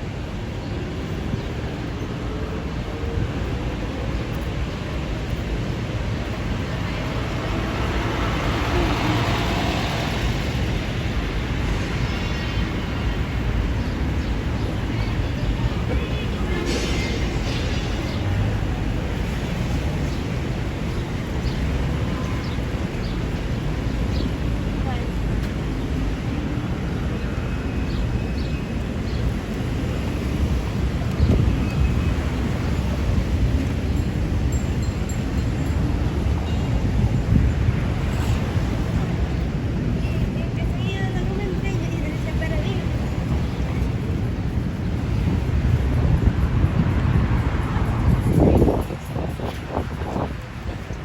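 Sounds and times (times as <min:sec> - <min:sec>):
rumble of traffic: 0:00.0 - 0:51.0
wind on microphone: 0:00.0 - 0:51.0.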